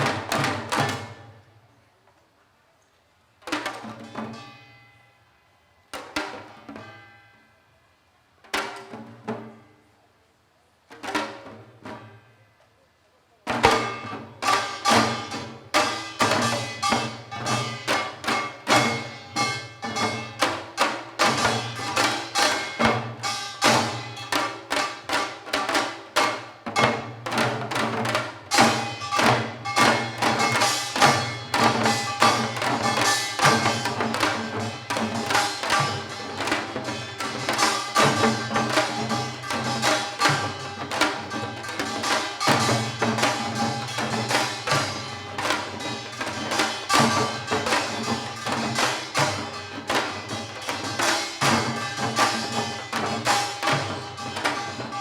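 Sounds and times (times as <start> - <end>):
hourglass drum fast rhythm: 13.5 - 55.0.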